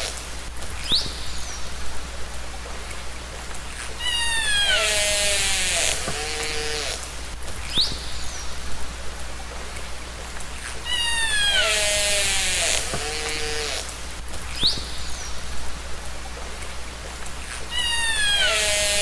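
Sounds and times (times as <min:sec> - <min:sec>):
steady hiss: 0:00.0 - 0:19.0
orca calls underwater: 0:04.0 - 0:05.5, 0:17.7 - 0:19.0.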